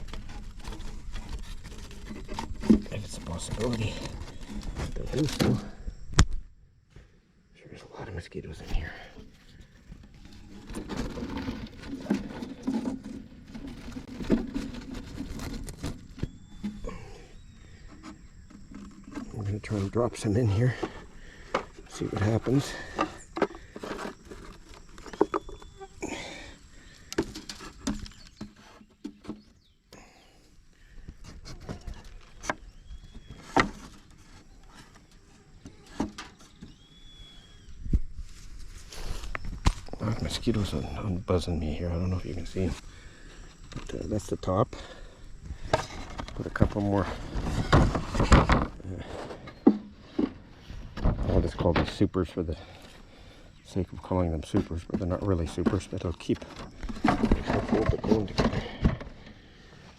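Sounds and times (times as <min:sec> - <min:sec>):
knocks and scrapes on wooden box: 0:00.0 - 0:05.6, 0:09.3 - 0:25.9, 0:45.6 - 0:50.4, 0:54.5 - 0:59.2
rustling and rubbing: 0:00.0 - 0:05.7, 0:08.7 - 0:26.0, 0:45.5 - 0:52.0.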